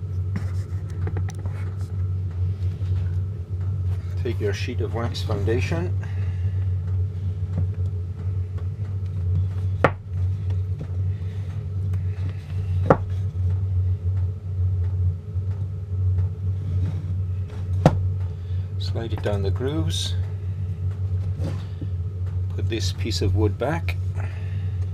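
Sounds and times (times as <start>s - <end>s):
steady low hum: 0.0s - 24.9s
sharp knocks on wood: 9.8s - 10.0s, 12.8s - 13.1s, 17.8s - 18.0s.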